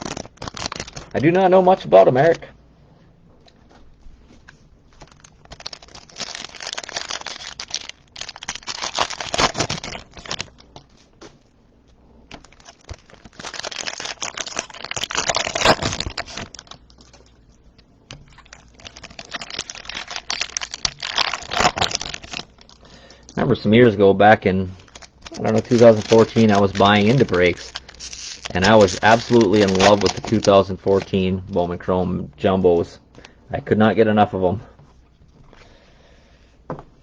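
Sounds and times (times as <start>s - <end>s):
plastic wrapping crinkling and tearing: 0.0s - 2.5s, 4.5s - 11.3s, 12.2s - 31.5s.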